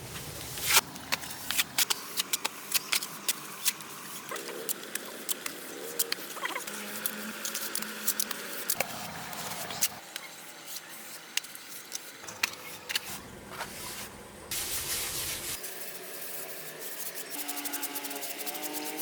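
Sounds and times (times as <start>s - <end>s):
hissing noise: 13.7s - 15.6s.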